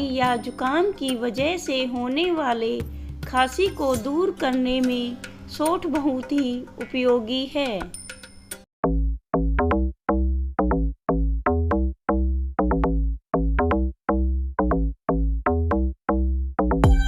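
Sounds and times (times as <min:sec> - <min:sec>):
electronic music with drum machine: 0:10.6 - 0:17.0.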